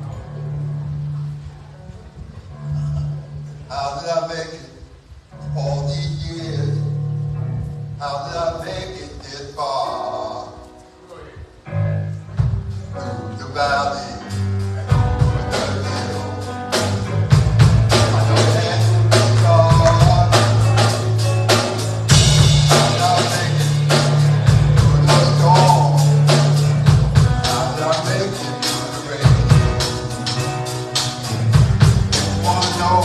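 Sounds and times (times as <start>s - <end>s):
gospel band playing: 0.0s - 33.0s
low bass notes: 5.3s - 9.3s, 11.6s - 33.0s
guitar: 10.0s - 33.0s
drum kit: 12.3s - 33.0s
person singing: 17.9s - 21.3s, 22.1s - 33.0s.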